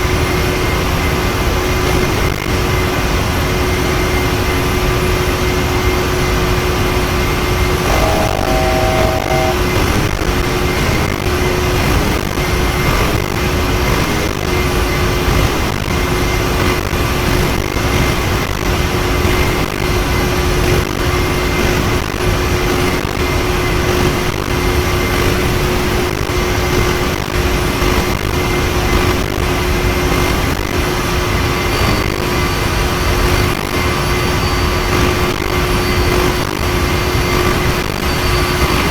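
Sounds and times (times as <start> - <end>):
jet engines in cabin: 0.0 - 10.2
brief electronic tone: 7.8 - 10.2.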